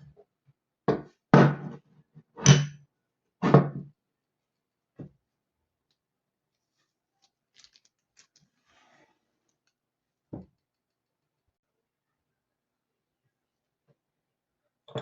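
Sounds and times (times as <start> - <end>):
light clicks of small parts: 7.2 - 8.5.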